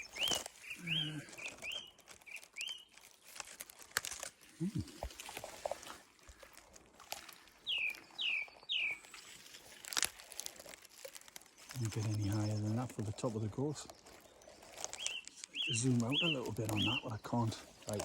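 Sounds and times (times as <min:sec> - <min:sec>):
short falling bird calls: 0:00.0 - 0:02.9, 0:14.9 - 0:17.1
gorse rustling and clicking: 0:00.0 - 0:18.0
short low grunt: 0:04.6 - 0:05.0.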